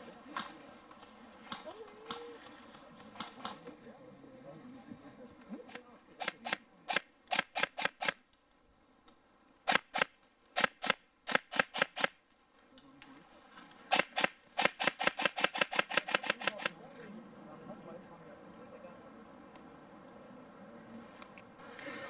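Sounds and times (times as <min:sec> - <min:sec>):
airsoft gun shots: 0:09.7 - 0:12.2, 0:13.9 - 0:16.7.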